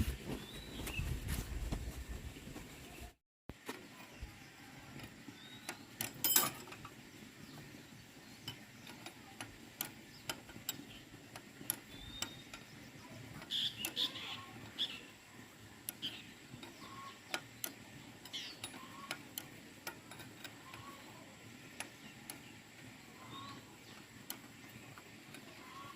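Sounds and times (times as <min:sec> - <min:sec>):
bird chirps: 0:11.9 - 0:15.2, 0:15.9 - 0:19.3, 0:20.6 - 0:24.2, 0:24.8 - 0:25.9.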